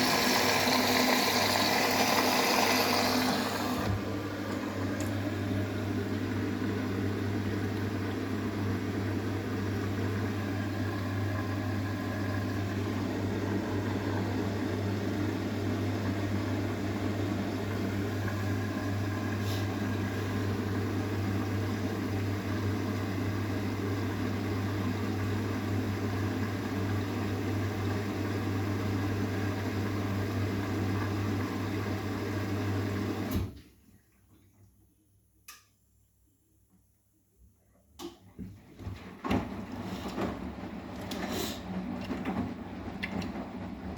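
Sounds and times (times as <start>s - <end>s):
washing machine humming: 0.0s - 33.6s, 37.9s - 43.9s
faint click: 35.4s - 35.8s.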